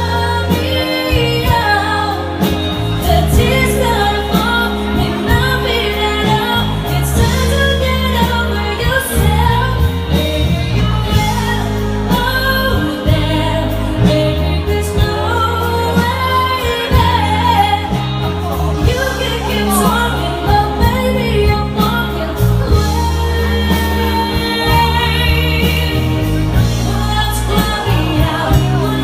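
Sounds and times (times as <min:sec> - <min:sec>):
live band playing: 0:00.0 - 0:29.0
person singing: 0:00.0 - 0:29.0.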